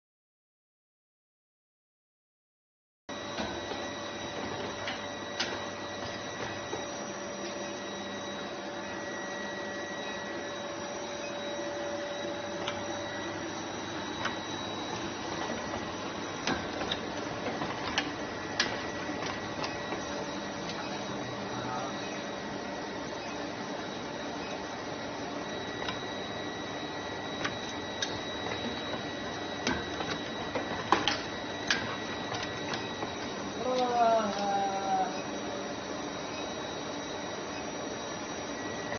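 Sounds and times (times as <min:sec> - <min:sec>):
brazing machine running: 0:03.2 - 0:36.9.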